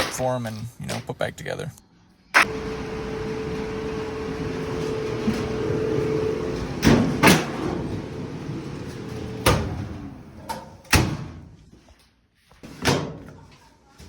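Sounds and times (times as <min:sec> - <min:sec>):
faint hum: 0:01.7 - 0:10.6
clothes dryer rumbling: 0:02.4 - 0:10.9.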